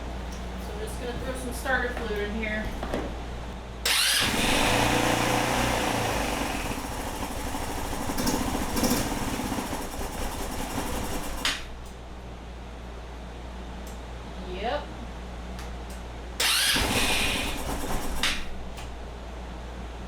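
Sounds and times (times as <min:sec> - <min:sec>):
quieter lower engine sound: 0:03.8 - 0:12.2
scooter engine cranking and running: 0:03.9 - 0:11.8, 0:16.4 - 0:18.8.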